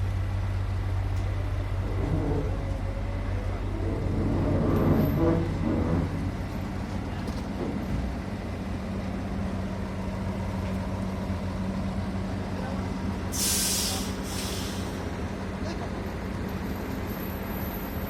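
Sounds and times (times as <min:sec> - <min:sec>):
heavy diesel engine running: 0:00.0 - 0:18.0
air release hiss: 0:13.3 - 0:15.0.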